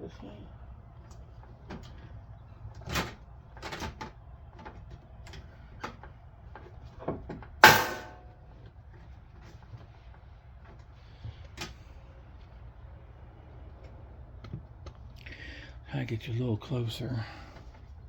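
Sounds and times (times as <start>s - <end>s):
loud metallic clank: 7.6s - 8.3s.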